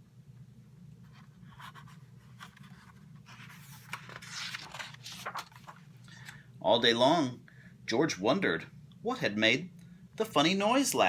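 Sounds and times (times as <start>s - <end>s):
low room hum: 0.0s - 11.0s
paper page rustling: 1.0s - 6.4s.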